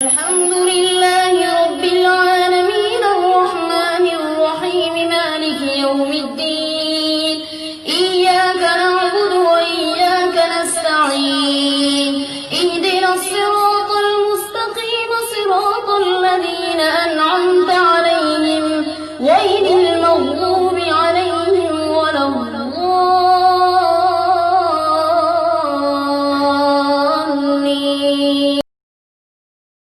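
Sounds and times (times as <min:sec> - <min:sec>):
high young voice chanting: 0:16.1 - 0:26.5.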